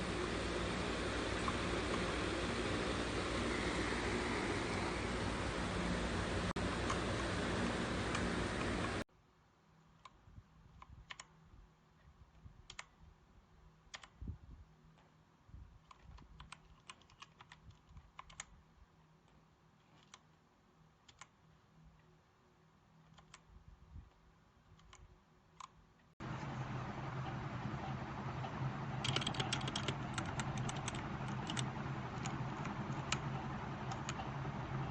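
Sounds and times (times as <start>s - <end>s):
loud steady noise with hum: 0.0s - 9.0s, 26.2s - 34.9s
mechanical keyboard clicks: 10.8s - 11.3s, 12.7s - 13.0s, 13.9s - 14.2s, 15.8s - 18.5s, 21.0s - 21.3s, 28.9s - 34.9s.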